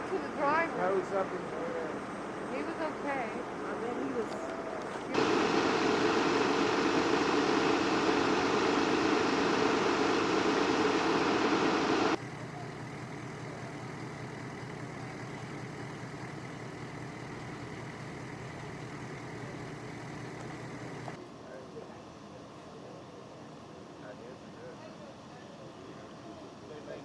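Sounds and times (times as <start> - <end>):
low engine hum: 4.5 - 21.2
truck engine idling: 5.1 - 21.2.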